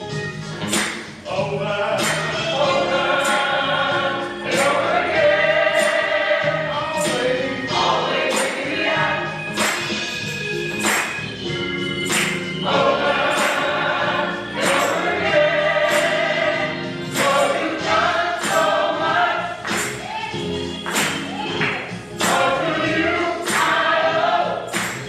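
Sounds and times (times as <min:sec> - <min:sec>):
percussion beat: 0:00.0 - 0:25.0
gospel choir singing: 0:00.5 - 0:25.0.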